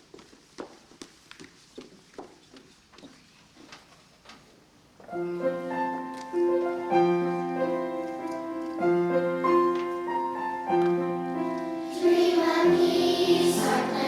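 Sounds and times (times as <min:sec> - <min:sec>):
piano playing slow chords: 0:05.1 - 0:14.0.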